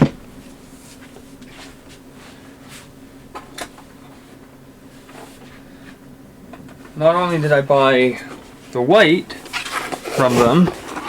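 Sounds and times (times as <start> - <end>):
steady low hum: 0.0 - 11.0
knocks and rustles of handled items: 9.4 - 11.0.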